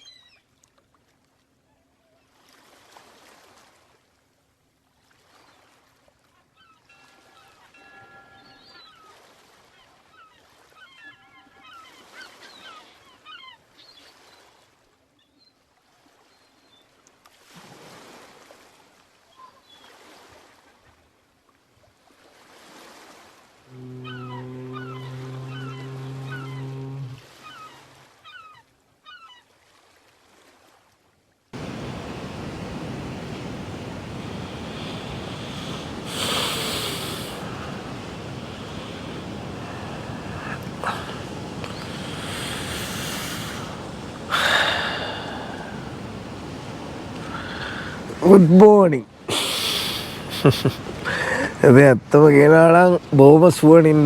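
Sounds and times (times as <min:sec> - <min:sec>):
faint birds chirping: 0:06.6 - 0:14.5, 0:23.7 - 0:29.4, 0:31.6 - 0:48.3.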